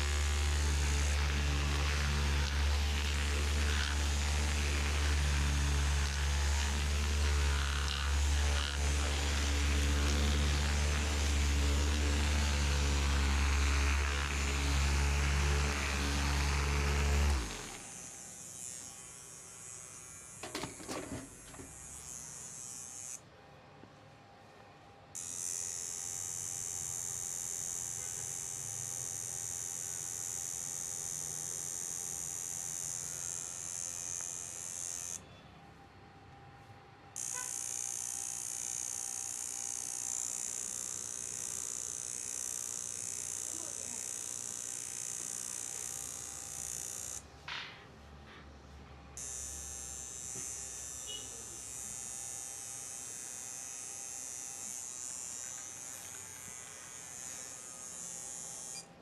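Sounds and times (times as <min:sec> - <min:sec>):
high-pitched electric whir: 0:00.0 - 0:23.2, 0:25.2 - 0:35.3, 0:37.1 - 0:47.7, 0:49.2 - 0:59.0
massage machine motor hum: 0:00.0 - 0:23.2, 0:25.2 - 0:35.2, 0:37.1 - 0:59.0.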